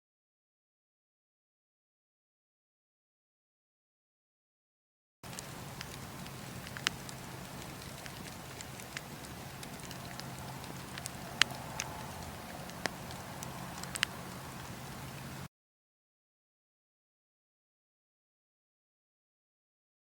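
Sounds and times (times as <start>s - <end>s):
bonfire crackling and popping: 5.2s - 15.5s.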